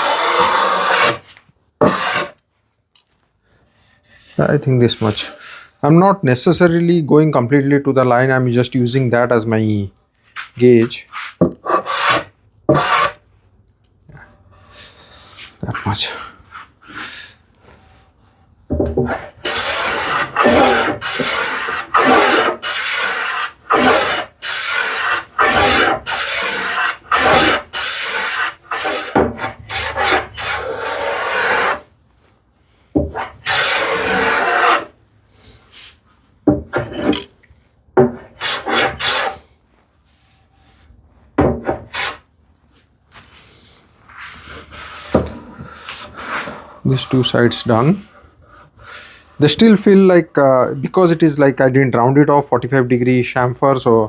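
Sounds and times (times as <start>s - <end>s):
hand plane strokes on wood: 0.0s - 2.4s, 10.4s - 13.2s, 18.8s - 31.9s, 33.0s - 34.9s, 38.0s - 39.5s, 41.7s - 42.2s.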